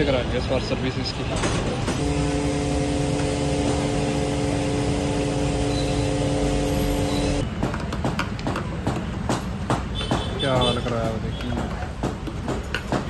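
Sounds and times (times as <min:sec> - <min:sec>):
motorcycle engine rumbling: 0:01.9 - 0:07.4.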